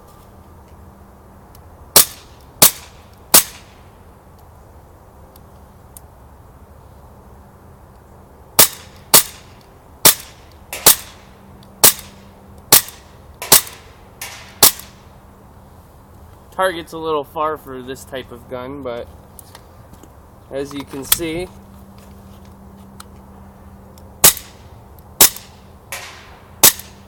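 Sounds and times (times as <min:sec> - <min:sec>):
air pistol shots: 0:02.0 - 0:03.8, 0:08.6 - 0:15.0, 0:24.2 - 0:24.6, 0:25.2 - 0:27.0.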